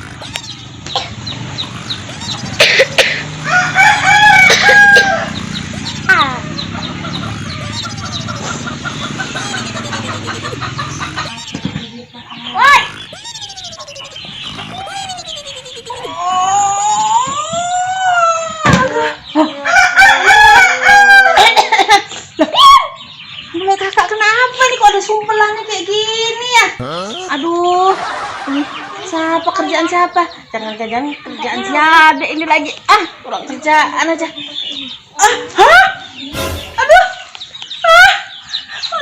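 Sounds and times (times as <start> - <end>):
high bird chirps: 0.0 - 3.0, 3.6 - 17.0
loud harsh calls: 0.0 - 18.1, 26.8 - 28.5
roosters crowing: 0.0 - 23.5, 26.8 - 38.9
rooster crowing: 2.1 - 11.4, 19.6 - 21.6.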